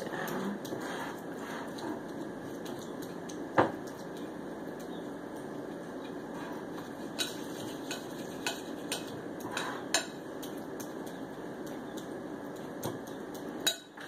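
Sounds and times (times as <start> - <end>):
steady background hum: 0.0 - 14.0
fork mashing cream cheese: 6.3 - 11.2
fork clinking against bowl: 7.2 - 10.2, 13.6 - 14.0.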